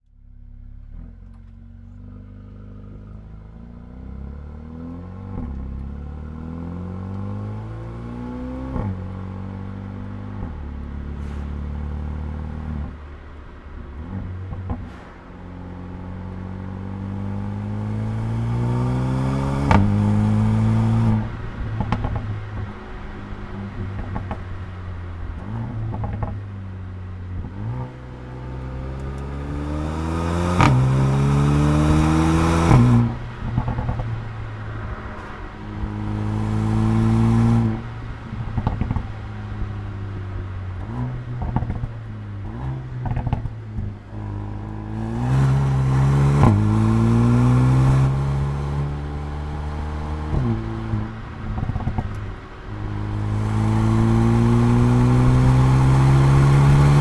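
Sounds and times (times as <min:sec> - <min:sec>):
car engine accelerating hard: 0:00.0 - 0:57.0
exhaust pops and crackles: 0:12.8 - 0:16.1, 0:19.5 - 0:29.3, 0:30.4 - 0:45.5, 0:47.8 - 0:57.0.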